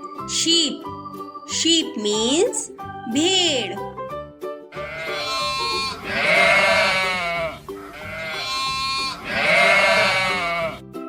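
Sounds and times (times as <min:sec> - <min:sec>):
sheep bleating: 0:04.8 - 0:10.8.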